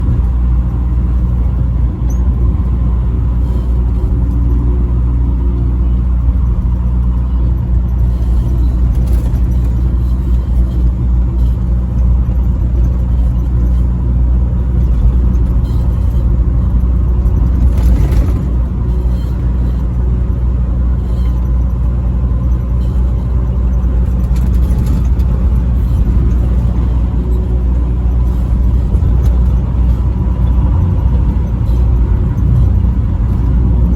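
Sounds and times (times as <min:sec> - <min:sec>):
truck engine rumble: 0:00.0 - 0:33.9.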